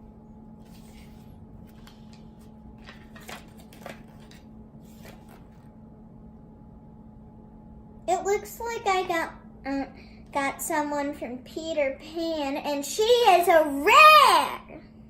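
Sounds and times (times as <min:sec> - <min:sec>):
steady low hum: 0:00.0 - 0:15.0
packaging and paper rustling: 0:00.6 - 0:05.7.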